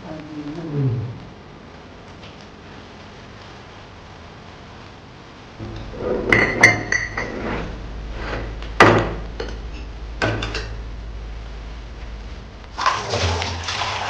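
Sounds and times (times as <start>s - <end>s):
low steady hum: 0.0s - 14.0s
kitchenware clinking and knocking: 5.6s - 7.7s.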